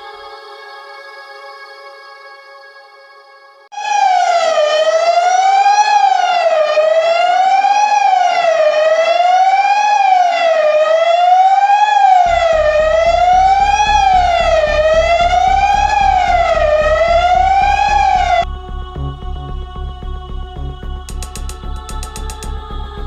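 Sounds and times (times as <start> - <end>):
wailing siren: 3.7 - 18.5
low pulsing beat: 12.3 - 23.0.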